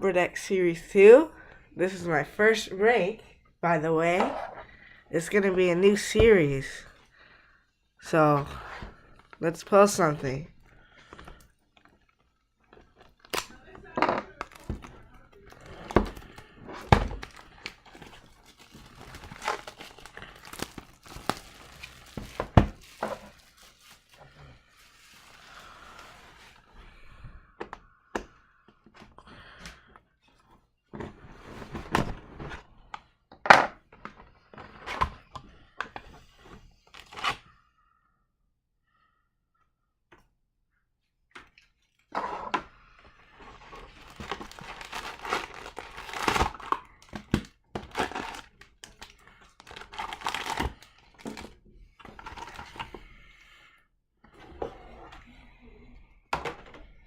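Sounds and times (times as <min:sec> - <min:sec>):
plastic wrap crinkling: 0:12.8 - 0:26.6, 0:43.7 - 0:51.5.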